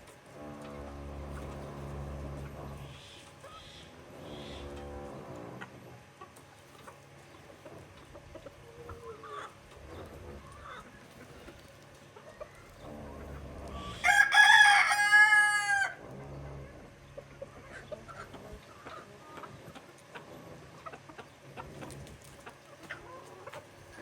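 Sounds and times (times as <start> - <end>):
chickens clucking: 0.0 - 24.0
rooster crowing: 13.8 - 16.0.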